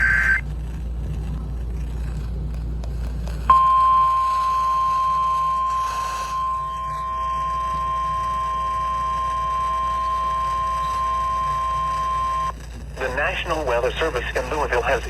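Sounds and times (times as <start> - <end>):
low radio hum: 0.0 - 15.0
emergency alert tone: 3.5 - 12.5.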